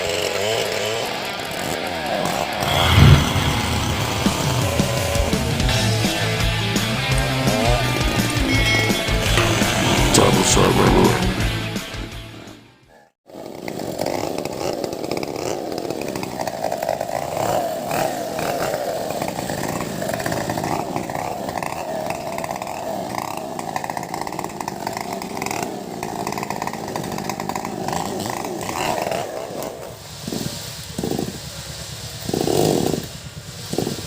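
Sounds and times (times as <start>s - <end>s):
chainsaws cutting wood: 0.0s - 2.6s, 13.3s - 29.9s.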